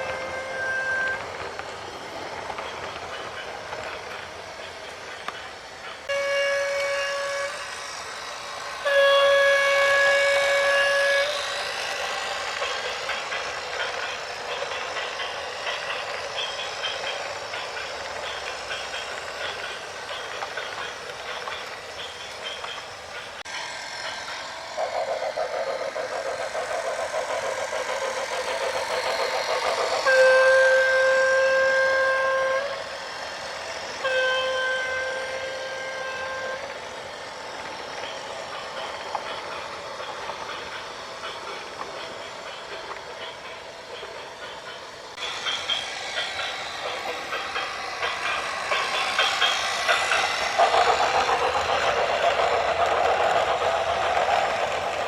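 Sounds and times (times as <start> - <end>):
vehicle horn blasts: 6.1 - 7.5, 8.8 - 11.2.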